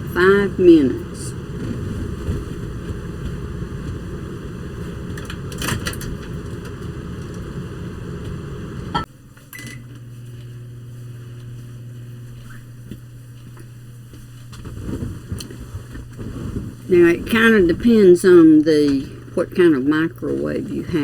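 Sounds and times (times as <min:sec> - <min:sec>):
low rumbling: 0:00.0 - 0:09.1
microwave oven humming: 0:00.0 - 0:21.0.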